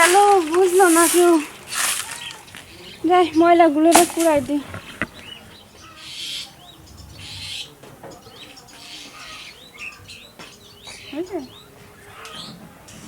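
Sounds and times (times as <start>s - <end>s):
rustling hisses: 0.0s - 5.5s
small birds chirping: 0.0s - 13.0s.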